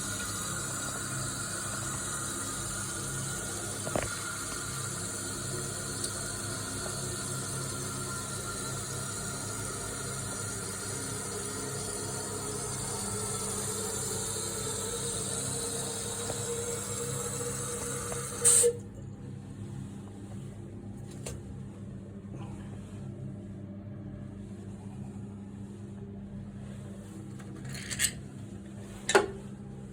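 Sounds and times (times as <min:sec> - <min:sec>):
cistern refilling with water hiss: 0:00.0 - 0:19.0
valve shutting off: 0:11.3 - 0:18.8.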